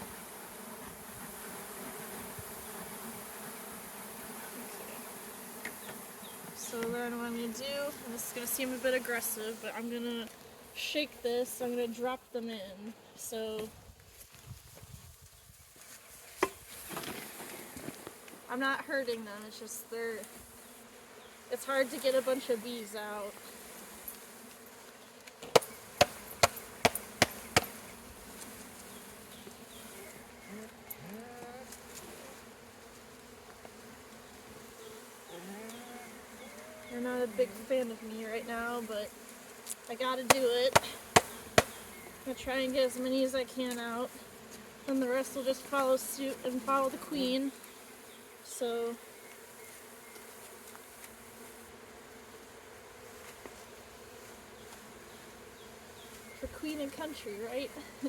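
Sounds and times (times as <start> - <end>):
bees buzzing: 0.0 - 13.6, 16.1 - 58.0
knocks on wooden package: 25.5 - 27.7.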